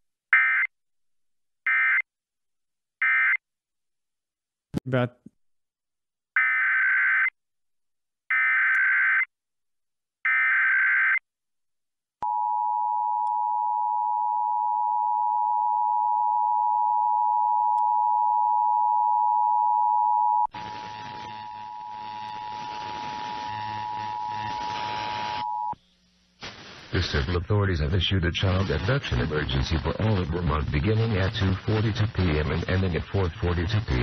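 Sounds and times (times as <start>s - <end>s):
hiss: 26.4s - 27.1s.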